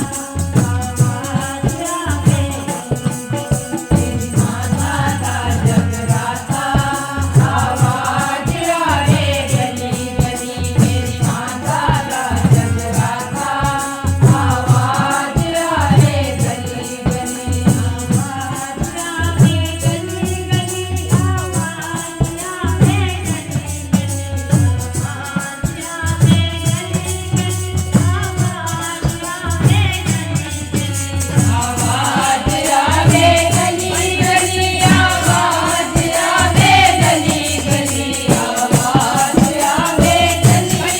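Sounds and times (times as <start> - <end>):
steady drum beat: 0.0 - 40.9
voices singing devotional song: 0.0 - 40.9.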